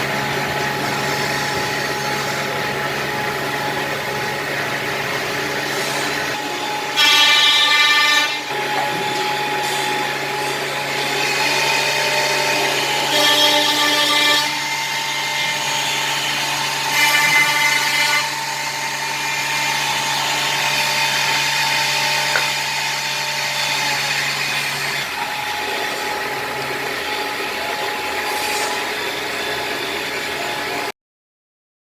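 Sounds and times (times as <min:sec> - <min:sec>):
drilling machine motor hum: 0:00.0 - 0:30.9
drill bits boring into wood: 0:05.3 - 0:30.7.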